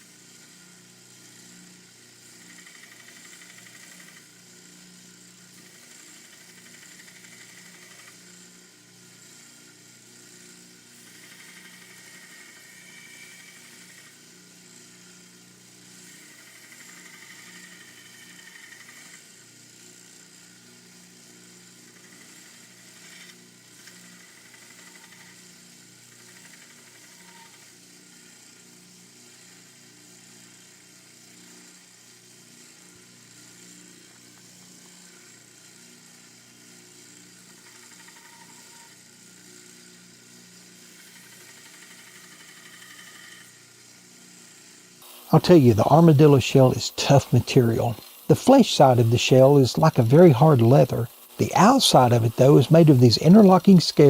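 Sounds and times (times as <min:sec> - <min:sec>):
high grinding sound: 0:11.0 - 0:15.2, 0:15.9 - 0:21.1, 0:45.1 - 0:54.0
belt grinder humming: 0:11.0 - 0:27.6.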